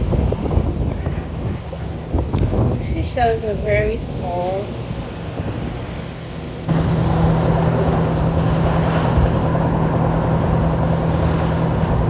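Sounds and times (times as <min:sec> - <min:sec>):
engine humming: 0:00.0 - 0:12.0
loud rushing noise: 0:04.8 - 0:12.0.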